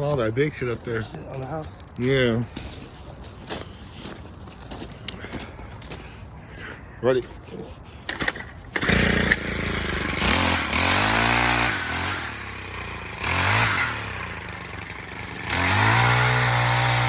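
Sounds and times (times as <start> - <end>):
chainsaw starting and revving: 8.1 - 17.0.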